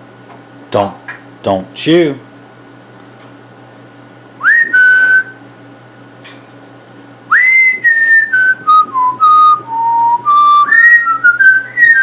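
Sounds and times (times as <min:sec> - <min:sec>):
parrot whistling: 0:04.4 - 0:05.4, 0:07.3 - 0:12.0.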